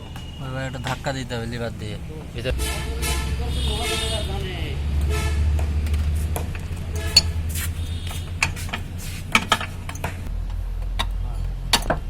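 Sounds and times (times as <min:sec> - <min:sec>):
low rumble: 0:10.2 - 0:12.0.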